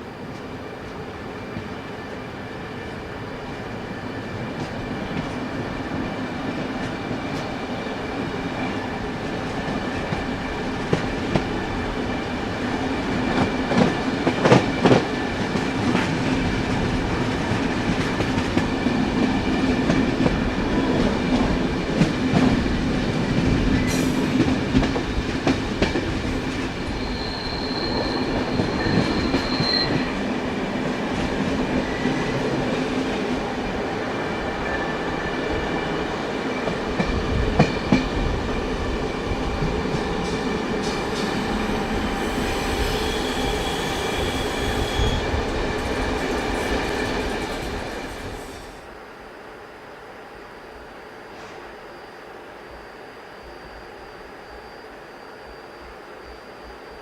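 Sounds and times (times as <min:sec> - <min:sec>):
train wheels rolling on rails: 0:00.0 - 0:48.9.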